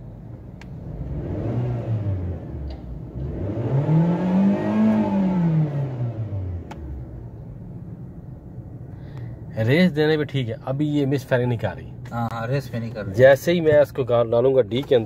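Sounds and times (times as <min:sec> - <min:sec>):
car engine revving: 0:00.6 - 0:08.1.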